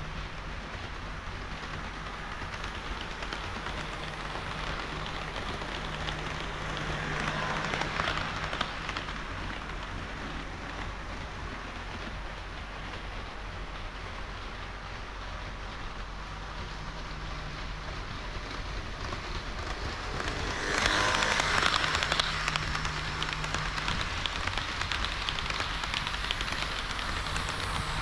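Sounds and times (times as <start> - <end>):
model train wheels rattling on rail: 0.0 - 28.0.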